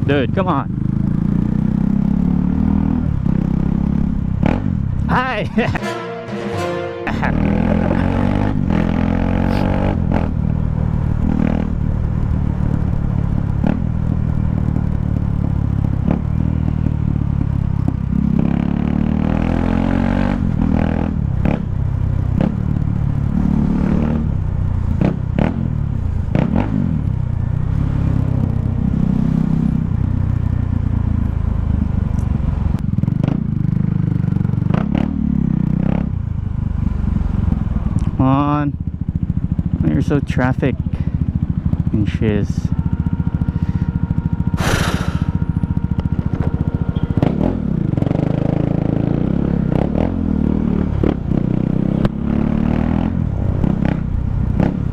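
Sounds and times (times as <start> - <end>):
motorcycle engine revving: 0.0 - 54.9
exhaust cracks: 39.0 - 48.8.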